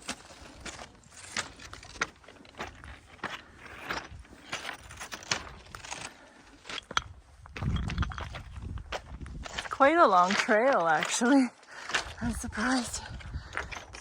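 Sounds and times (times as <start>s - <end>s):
footsteps crunching on rocky trail: 0.0s - 14.0s.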